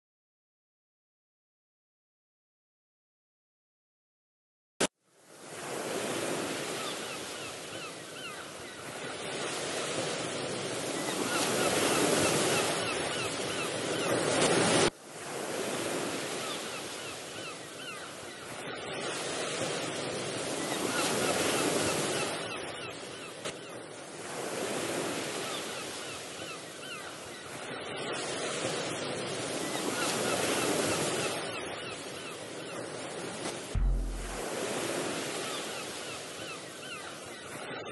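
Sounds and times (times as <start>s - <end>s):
sea waves breaking on shore: 5.2s - 37.9s.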